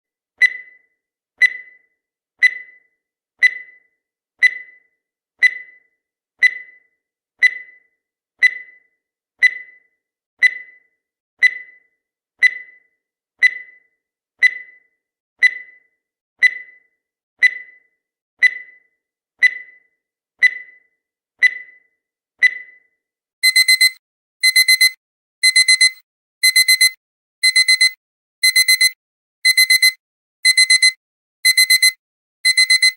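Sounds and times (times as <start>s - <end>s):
timer ticking: 1.4s - 1.8s, 2.4s - 2.8s, 3.4s - 3.8s, 4.4s - 4.8s, 5.4s - 5.8s, 6.4s - 6.8s, 7.4s - 7.8s, 8.4s - 8.8s, 9.4s - 9.8s, 10.4s - 10.8s, 12.4s - 12.8s, 13.4s - 13.8s, 14.4s - 14.8s, 17.4s - 17.8s, 19.4s - 19.8s, 23.4s - 32.9s
digital alarm beeping: 23.4s - 32.9s.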